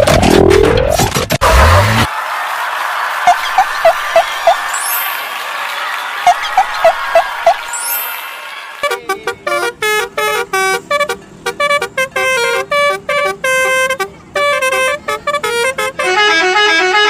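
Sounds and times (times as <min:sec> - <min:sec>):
bus horn playing a tune: 0:06.3 - 0:17.0.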